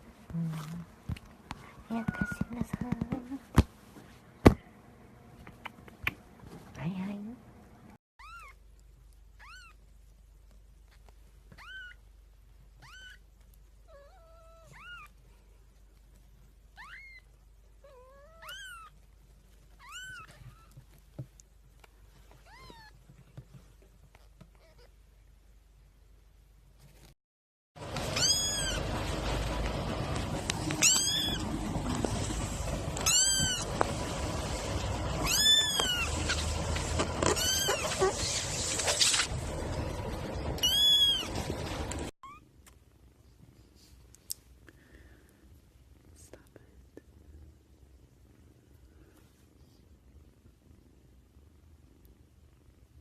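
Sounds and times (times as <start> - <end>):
cat meowing: 1.9 - 2.6, 8.2 - 8.6, 11.5 - 12.0, 12.8 - 13.2, 16.8 - 18.9, 28.0 - 28.9, 30.7 - 31.4, 33.0 - 33.7, 35.2 - 36.5, 37.2 - 38.2, 40.6 - 41.3.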